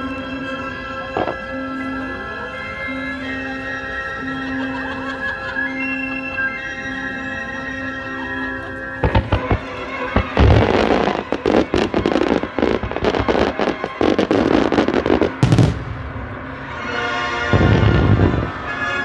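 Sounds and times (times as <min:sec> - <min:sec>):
music soundtrack: 0:00.0 - 0:19.0
fireworks bangs and crackles: 0:00.3 - 0:02.2, 0:08.6 - 0:19.0.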